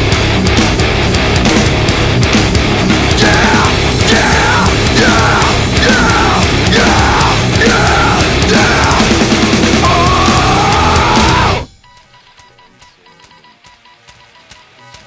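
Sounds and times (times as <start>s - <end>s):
loud heavy metal music: 0.0s - 11.7s.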